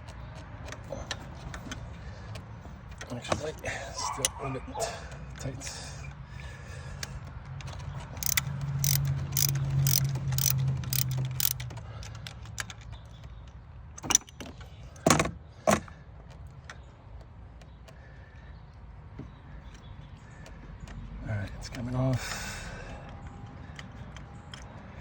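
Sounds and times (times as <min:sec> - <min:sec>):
socket ratchet clicking: 0:07.7 - 0:12.8, 0:14.0 - 0:14.4.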